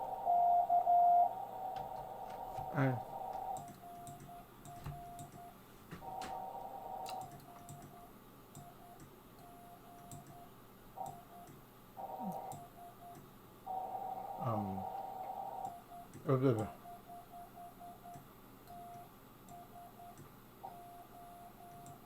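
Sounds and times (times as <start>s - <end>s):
morse code tone: 0.2s - 1.4s, 16.7s - 22.0s
faint clicks: 7.0s - 10.4s.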